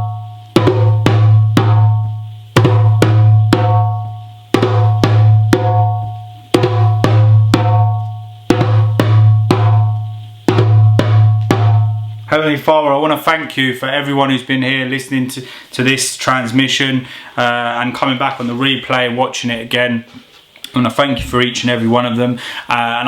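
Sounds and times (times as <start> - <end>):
drum booming: 0.0 - 12.8.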